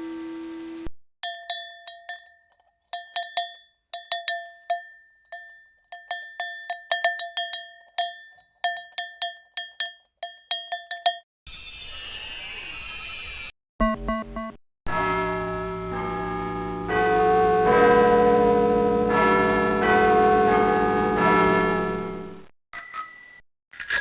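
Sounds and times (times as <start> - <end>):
dense alarm sound: 13.8 - 22.4
long ringing tone: 14.9 - 22.4
metal alarm bell strikes: 14.9 - 24.0.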